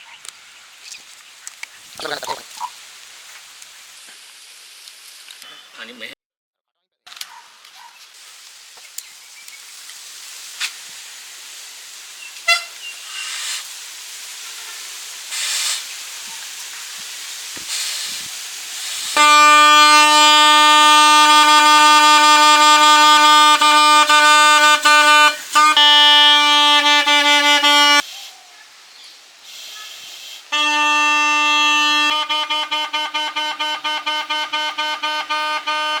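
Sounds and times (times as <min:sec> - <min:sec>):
vuvuzela horn blast: 0:12.4 - 0:12.8, 0:19.2 - 0:28.0, 0:30.5 - 0:36.0.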